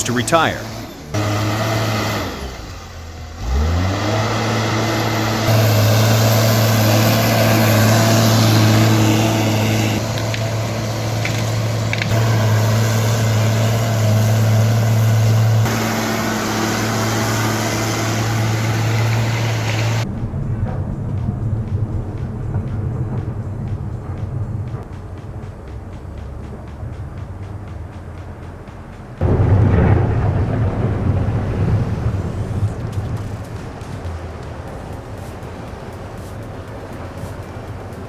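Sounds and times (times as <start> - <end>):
diesel engine running under load: 0.0 - 38.0.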